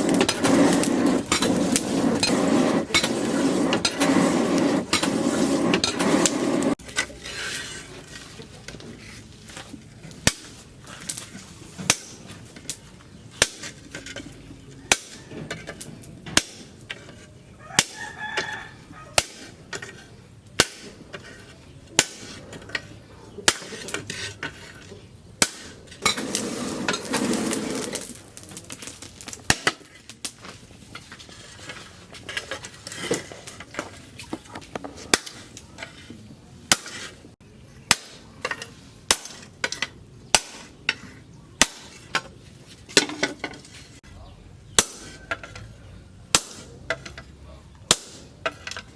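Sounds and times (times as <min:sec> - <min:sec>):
rooster crowing: 0:17.6 - 0:19.2.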